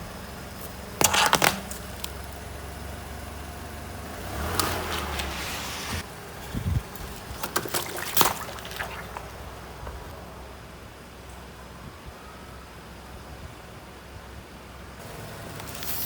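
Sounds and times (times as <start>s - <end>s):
low engine rumble: 0.0s - 16.0s
sharp cracks and crunches: 0.6s - 2.4s
tyre rolling over objects: 0.6s - 2.6s, 4.2s - 10.1s
hissing spray: 15.6s - 16.0s.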